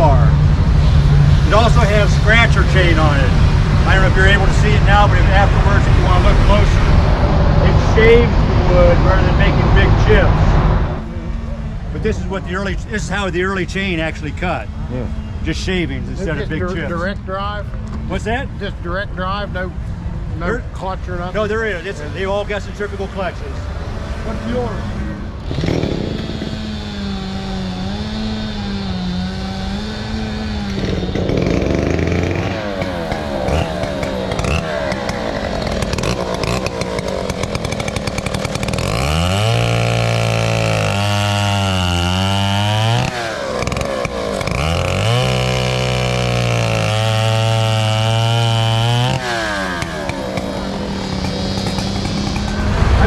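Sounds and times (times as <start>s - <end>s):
chainsaw idling and revving: 25.4s - 53.0s.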